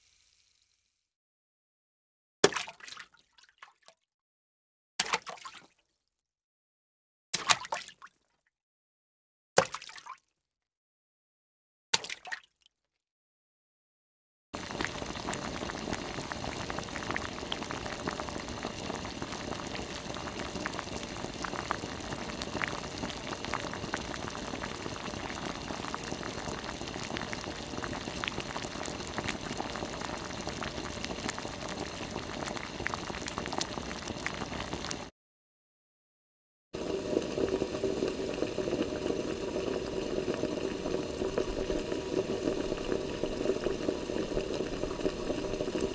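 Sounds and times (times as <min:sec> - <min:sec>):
full steady water sound: 0:14.6 - 0:35.1, 0:36.8 - 0:45.9
water bubbling with pops: 0:14.6 - 0:35.1, 0:36.8 - 0:45.9.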